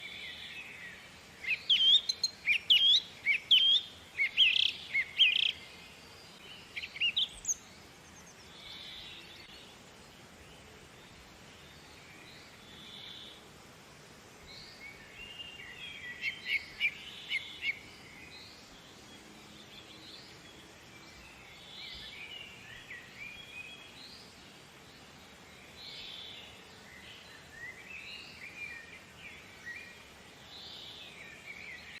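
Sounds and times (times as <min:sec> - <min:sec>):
faint steady hiss: 0:00.0 - 0:32.0
small birds chirping: 0:00.0 - 0:32.0.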